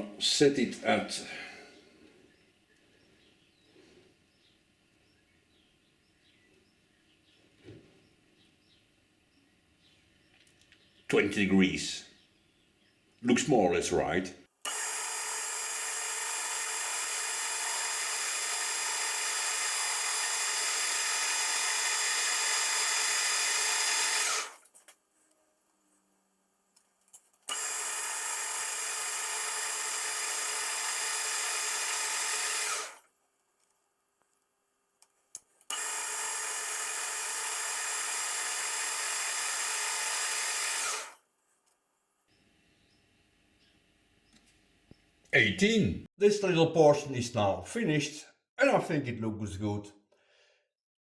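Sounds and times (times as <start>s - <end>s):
small clicks: 10.3s - 10.9s, 26.7s - 28.7s, 32.6s - 37.0s
metal lathe whining: 14.7s - 24.6s, 27.5s - 33.0s, 35.7s - 41.2s.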